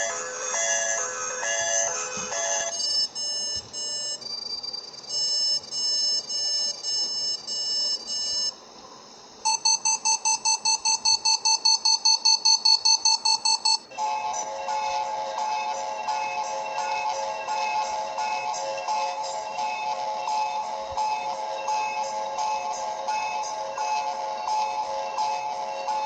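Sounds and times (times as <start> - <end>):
steady held alarm tone: 1.4 - 8.6, 9.4 - 13.9
fast pulsing alarm tone: 2.4 - 8.5, 9.5 - 13.8
multi-pitched alert beeps: 9.5 - 13.8.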